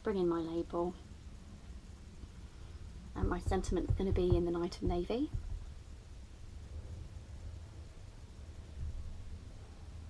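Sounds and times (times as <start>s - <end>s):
low steady hum: 0.0s - 10.0s
soft low bump: 3.2s - 5.8s, 8.7s - 9.4s.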